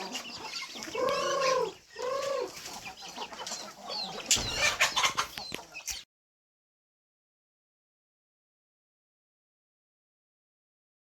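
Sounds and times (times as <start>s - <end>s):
chickens clucking: 0.0s - 6.1s.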